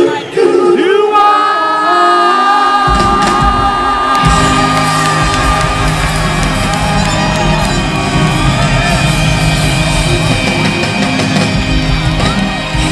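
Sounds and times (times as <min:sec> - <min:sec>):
live rock band playing: 0:02.9 - 0:12.9.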